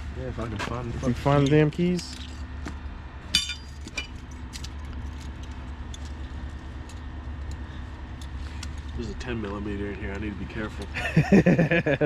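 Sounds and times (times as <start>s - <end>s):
steady low hum: 0.0s - 12.0s
sharp metallic clink: 3.3s - 4.2s.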